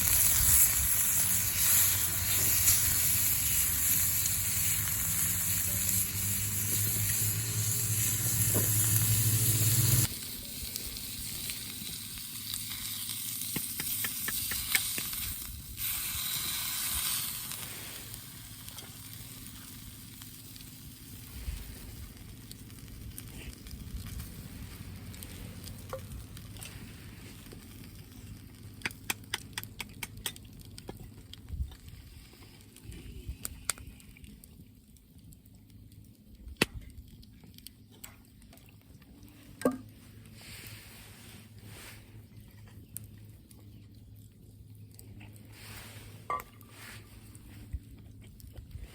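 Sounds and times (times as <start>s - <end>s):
food sizzling over fire: 0.0s - 36.7s, 45.5s - 47.9s
fire crackling pops: 0.0s - 38.5s
steady hiss with low hum: 0.0s - 48.9s.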